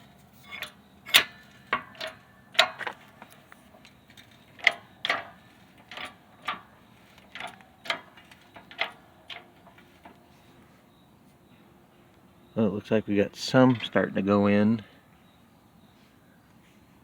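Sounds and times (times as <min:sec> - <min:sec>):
press clicking metallically: 0:04.1 - 0:10.2.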